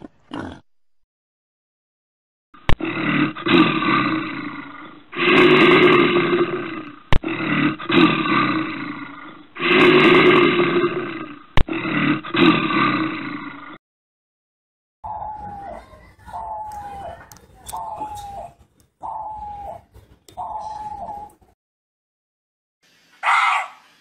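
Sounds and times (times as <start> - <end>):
large animal roaring: 2.7 - 13.8.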